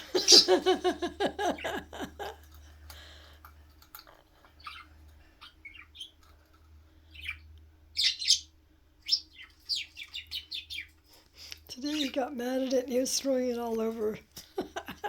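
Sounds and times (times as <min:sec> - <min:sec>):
budgerigar chirps and harsh calls: 0:00.0 - 0:00.6, 0:04.6 - 0:06.2, 0:07.1 - 0:11.0.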